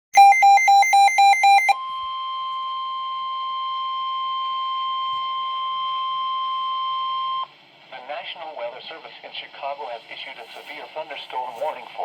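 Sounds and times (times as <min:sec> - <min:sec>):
rapid two-pitch beeping: 0:00.2 - 0:01.8
steady high alarm tone: 0:00.2 - 0:04.3.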